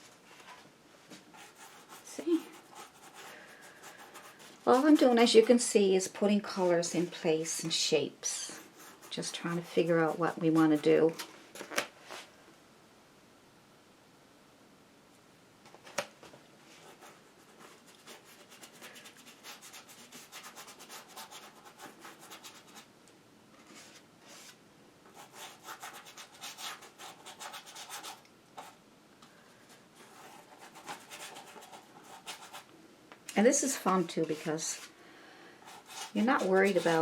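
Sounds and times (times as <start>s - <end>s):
brush scrubbing on canvas: 35.7s - 37.0s.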